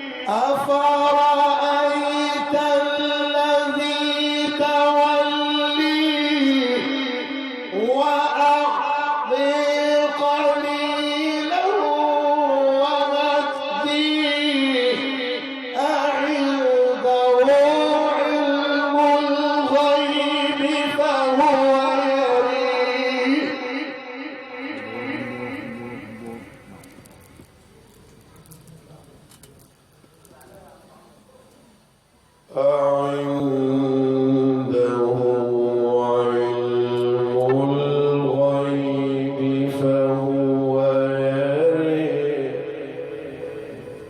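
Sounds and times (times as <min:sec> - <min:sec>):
man chanting recitation: 0:00.0 - 0:31.6, 0:32.4 - 0:44.0.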